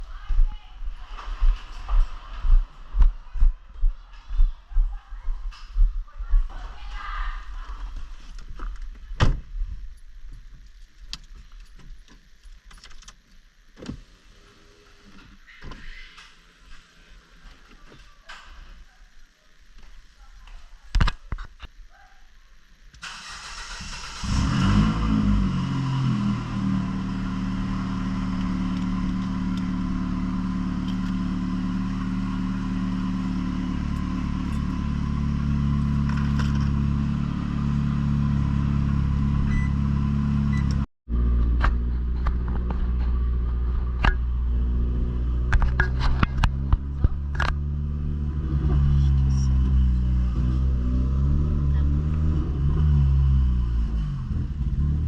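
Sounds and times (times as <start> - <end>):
sharp clicks and clatter: 45.4 - 47.6.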